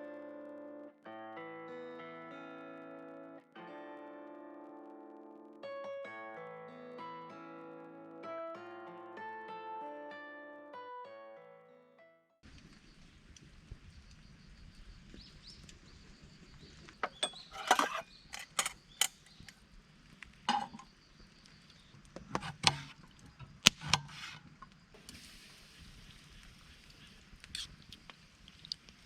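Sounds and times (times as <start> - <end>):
objects clicking and clinking: 17.0 - 19.6, 20.5 - 20.9.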